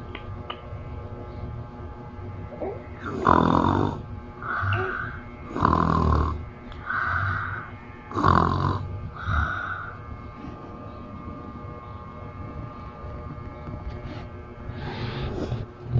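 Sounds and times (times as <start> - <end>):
faint background music: 0.0 - 15.9
woman snoring: 3.0 - 10.5.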